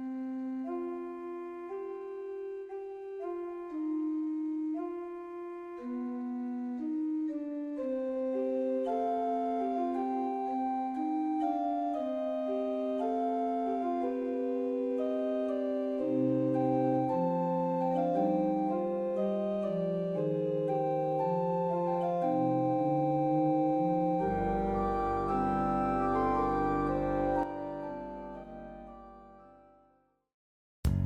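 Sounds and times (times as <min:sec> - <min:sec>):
slow instrumental chords: 0:15.0 - 0:29.8.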